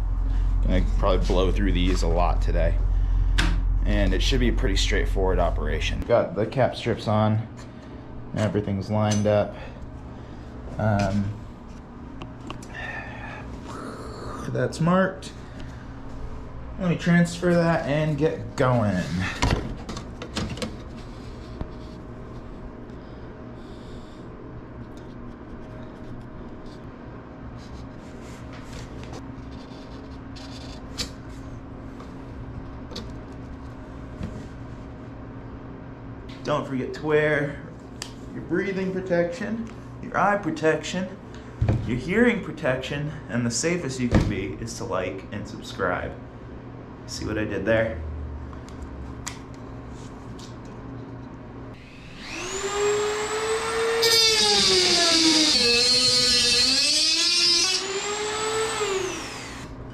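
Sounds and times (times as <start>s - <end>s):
low hum: 0.0s - 36.3s, 44.1s - 59.9s
rubbing and handling metal: 24.9s - 31.5s
rotary tool motor whine: 51.8s - 59.7s.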